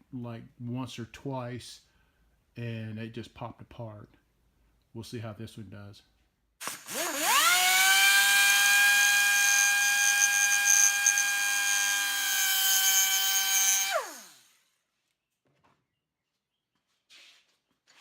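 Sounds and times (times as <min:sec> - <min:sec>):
die grinder whine: 0:06.6 - 0:14.6.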